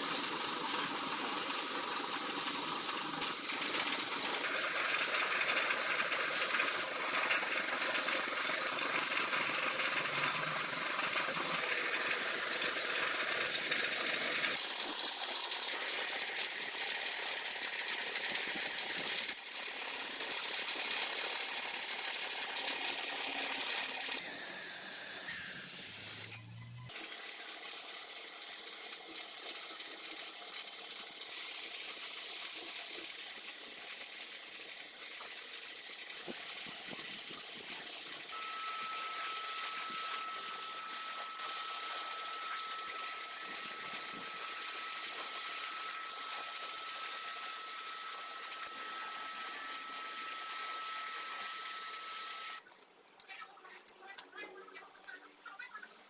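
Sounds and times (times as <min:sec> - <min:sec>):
pressurised spraying hiss: 0:00.0 - 0:26.3, 0:26.9 - 0:52.6
thin steady whistle: 0:24.1 - 0:26.9, 0:38.3 - 0:52.7.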